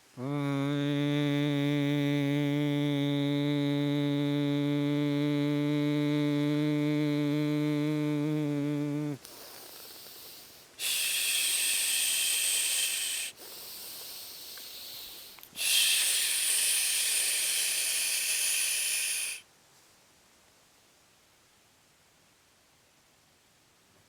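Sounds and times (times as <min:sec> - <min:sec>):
air hissing: 0:08.6 - 0:19.4.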